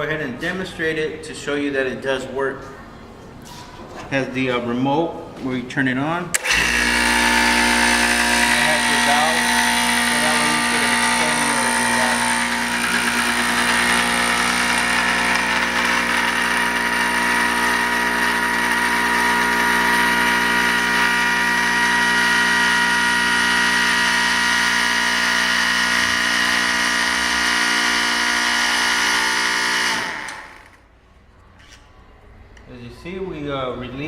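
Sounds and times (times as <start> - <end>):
electric hydraulic pump running: 6.3 - 30.8.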